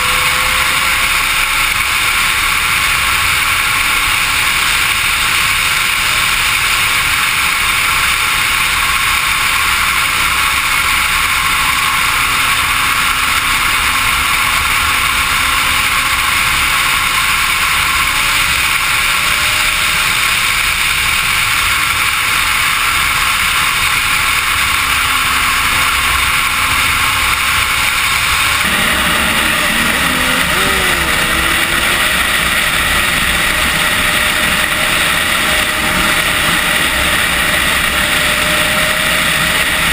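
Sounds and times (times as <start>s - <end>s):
motorcycle engine at speed: 0.0s - 39.9s.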